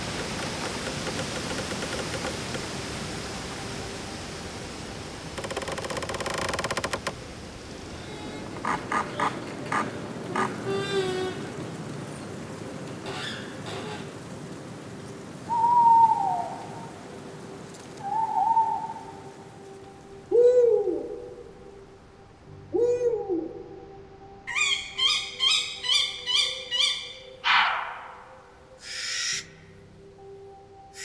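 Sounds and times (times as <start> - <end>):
owl hoots: 18.0 - 19.1
owl hissing call: 28.8 - 29.4
owl screech: 28.8 - 29.4.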